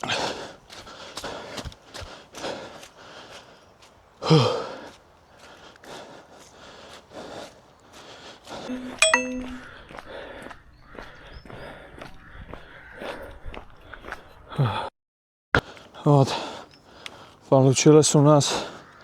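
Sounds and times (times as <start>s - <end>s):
runner's footsteps: 0.0s - 8.7s
bright electronic ding: 8.7s - 9.7s.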